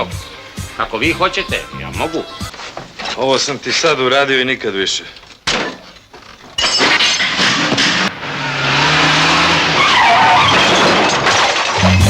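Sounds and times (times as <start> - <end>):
tyres squealing: 0.0 - 12.0
car engine revving hard: 8.0 - 11.0.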